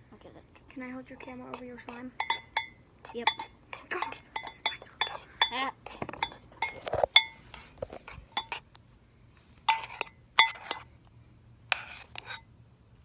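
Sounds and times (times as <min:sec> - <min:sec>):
spoon scraping bowl: 0:01.0 - 0:08.7, 0:09.7 - 0:11.0, 0:11.7 - 0:12.5
metal spoon clinking on bowl: 0:01.5 - 0:07.4, 0:08.4 - 0:08.6, 0:09.7 - 0:10.9.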